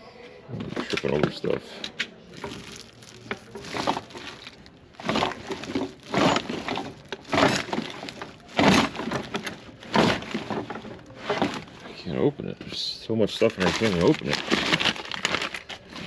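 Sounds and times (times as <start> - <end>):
tools rattling and clanking: 2.4 - 12.0, 13.4 - 16.0.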